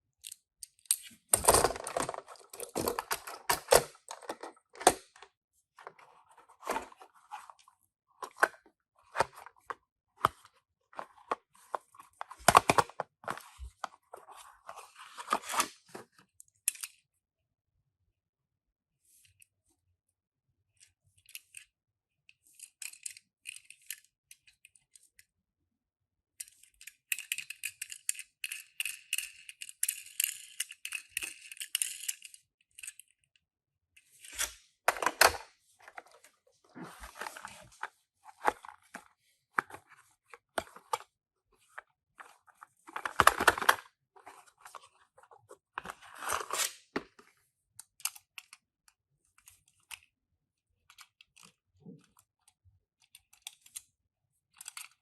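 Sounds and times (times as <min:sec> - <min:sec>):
packaging handling noises: 0:01.4 - 0:05.0.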